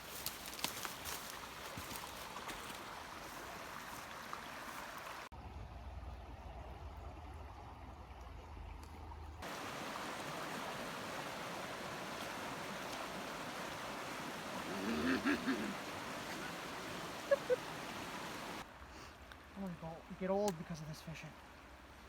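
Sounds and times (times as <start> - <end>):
creek water running: 0.0 - 22.0.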